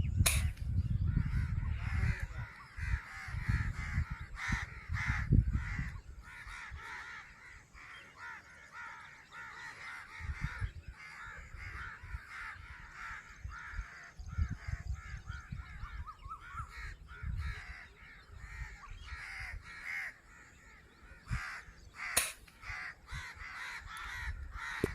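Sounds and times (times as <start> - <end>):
sharp crack: 0.2 - 0.7, 22.1 - 22.7
crows cawing: 1.1 - 24.9.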